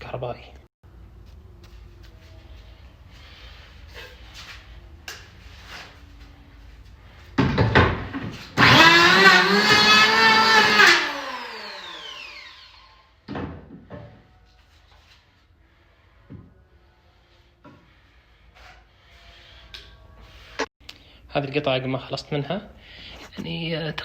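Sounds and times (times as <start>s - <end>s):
power tool motor whining: 8.6s - 13.0s.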